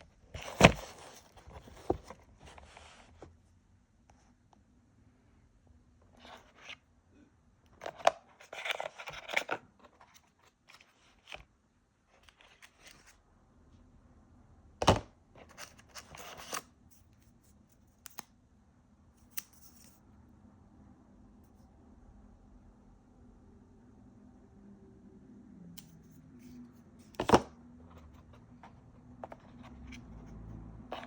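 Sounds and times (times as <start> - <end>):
packaging rustling and scraping: 0.3 - 3.1, 7.8 - 11.4.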